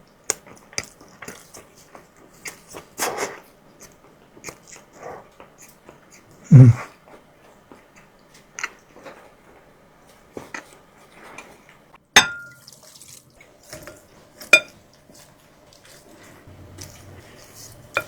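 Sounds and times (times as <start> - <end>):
wet mouth eating noises: 0.3 - 7.2
utensil clinking against dish: 12.2 - 12.8, 13.8 - 14.8.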